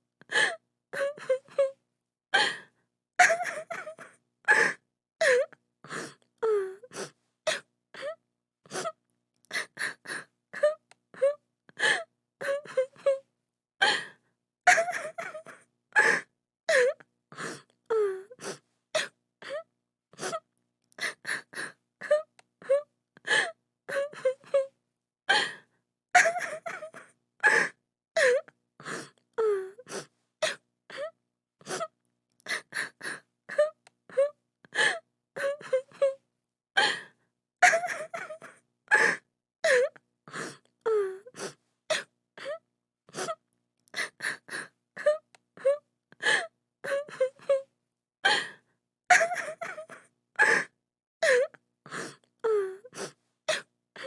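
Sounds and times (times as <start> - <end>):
woman sobbing: 3.2 - 5.5, 14.7 - 17.0, 26.2 - 28.4, 32.6 - 36.2, 37.6 - 39.9, 44.0 - 47.7, 49.1 - 51.5.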